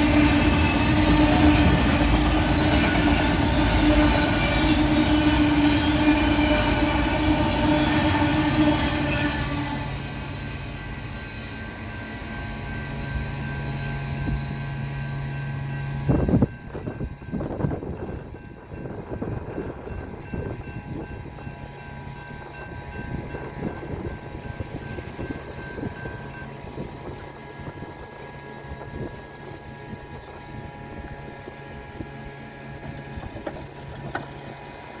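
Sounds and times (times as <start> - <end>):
train rumble: 0.0 - 35.0
train wheels clacking over rail joints: 32.7 - 35.0.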